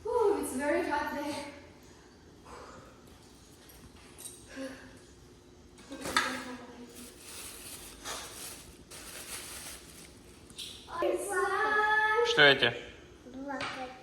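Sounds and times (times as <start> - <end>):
rustles and knocks of groceries: 6.0 - 10.9.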